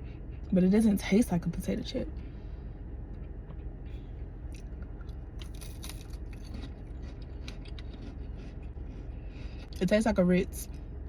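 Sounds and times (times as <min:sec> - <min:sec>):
steady low hum: 0:00.0 - 0:11.0
person chewing crisp cracker: 0:04.4 - 0:09.9.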